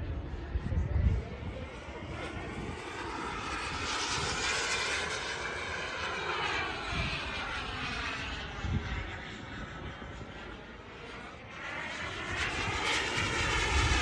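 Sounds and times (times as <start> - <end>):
model jet flying past: 0.0 - 14.0.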